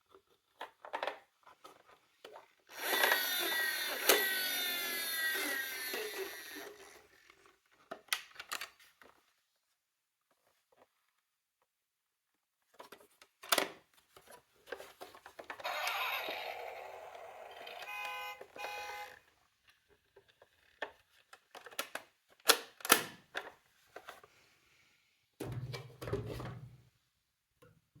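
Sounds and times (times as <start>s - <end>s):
toy cars clacking: 2.7s - 7.1s, 15.6s - 19.2s
toy cars rolling with rattling hiss: 2.7s - 7.3s, 15.6s - 17.9s
electronic siren beeping: 17.7s - 19.2s.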